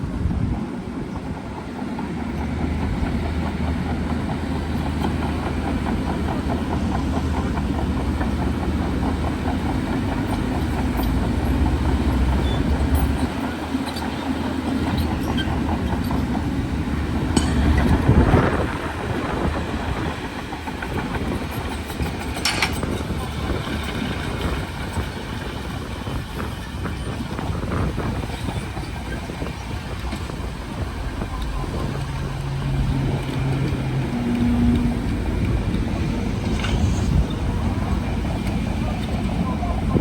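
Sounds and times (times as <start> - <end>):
bulldozer diesel rumble: 0.0 - 40.0
steel crawler tracks clanking: 0.0 - 40.0
sharp metallic knocks: 17.3 - 18.6.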